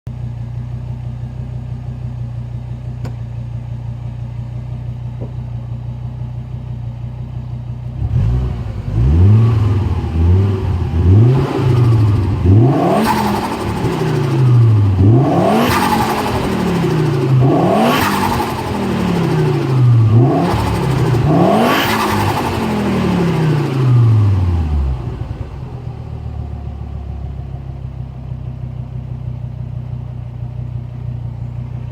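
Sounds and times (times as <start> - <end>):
car engine idling and revving: 0.1 - 31.9.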